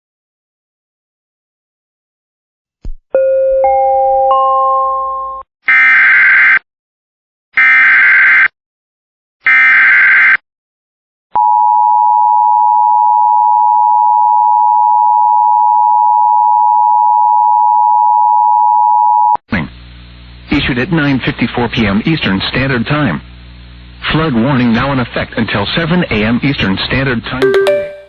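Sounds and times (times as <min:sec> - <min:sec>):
rising chime: 0:27.4 - 0:28.0
two-tone alert signal: 0:27.4 - 0:28.0.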